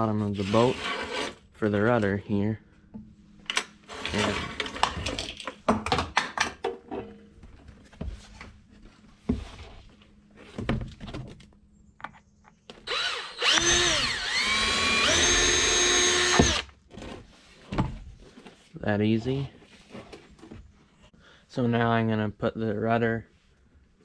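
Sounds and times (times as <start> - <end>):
electric drill whining: 12.7 - 16.7.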